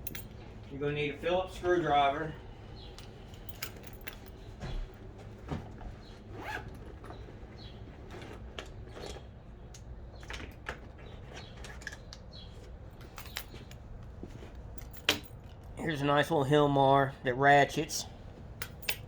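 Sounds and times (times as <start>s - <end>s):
hand tools clinking: 0.0s - 0.5s, 2.9s - 4.4s, 14.7s - 15.6s, 18.6s - 19.0s.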